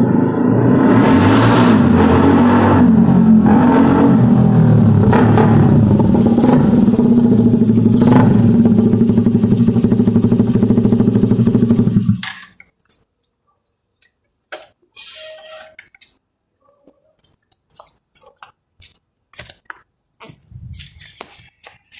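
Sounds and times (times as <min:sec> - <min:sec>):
motorcycle engine running loud: 0:02.7 - 0:12.2.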